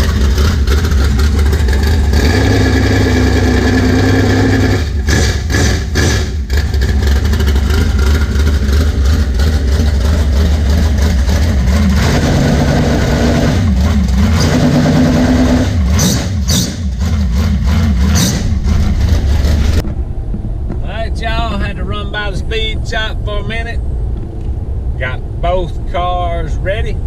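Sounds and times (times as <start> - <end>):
loud engine running: 0.0 - 20.8.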